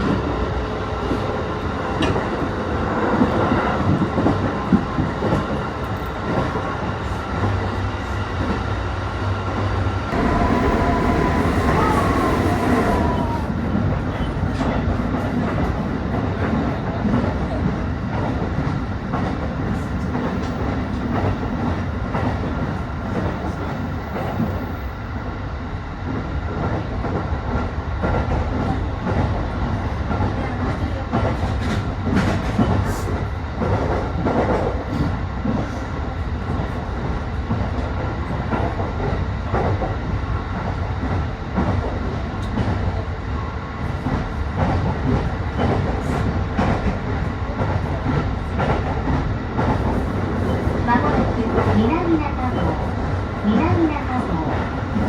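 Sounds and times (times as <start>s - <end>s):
train wheels rumbling on rail: 0.0s - 55.0s
rail joint clicks: 10.1s - 24.9s
high whine: 10.2s - 17.8s.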